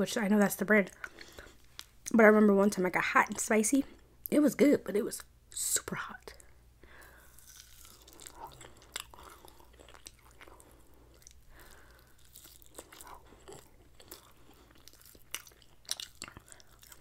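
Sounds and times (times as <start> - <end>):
close-up chewing: 6.4 - 17.0.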